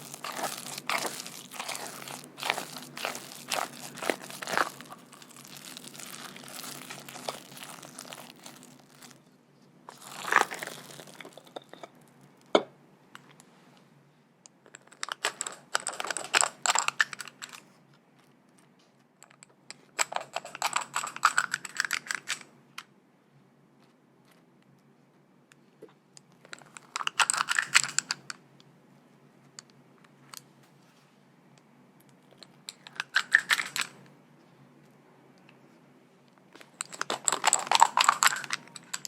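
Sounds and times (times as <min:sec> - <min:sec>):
crinkling handling sounds: 0:00.0 - 0:12.5, 0:14.8 - 0:22.5, 0:25.7 - 0:28.3, 0:32.2 - 0:35.7, 0:36.4 - 0:39.0.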